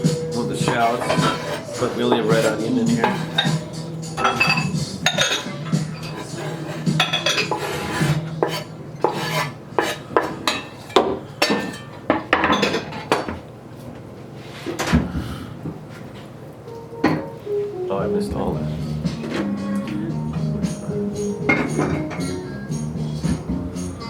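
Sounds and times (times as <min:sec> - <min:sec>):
dishes and cutlery clattering: 0:00.1 - 0:13.4, 0:17.0 - 0:17.5, 0:20.6 - 0:22.5.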